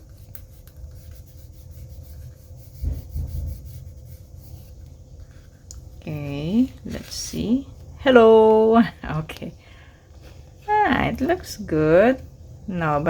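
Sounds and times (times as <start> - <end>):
fingers rubbing plastic sheet: 0.0 - 4.8.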